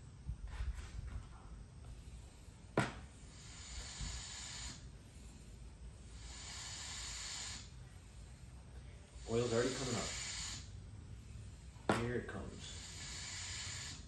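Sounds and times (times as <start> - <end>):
hand pump hissing strokes: 3.2 - 14.0.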